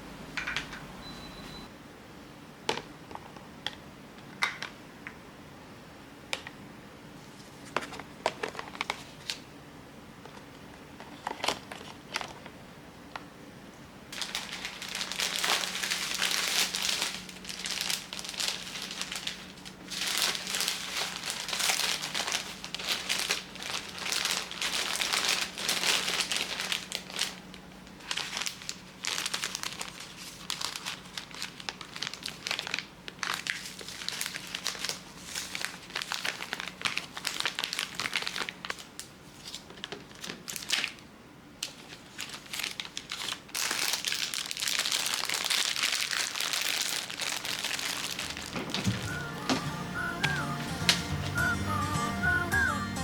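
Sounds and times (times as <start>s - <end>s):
plastic bags crinkling: 14.1s - 41.0s, 41.6s - 51.6s.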